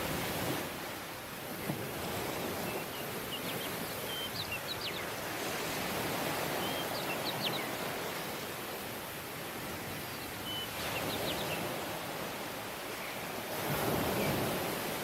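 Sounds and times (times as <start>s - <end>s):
surf washing on beach: 0.0s - 15.0s
small birds chirping: 2.6s - 5.2s.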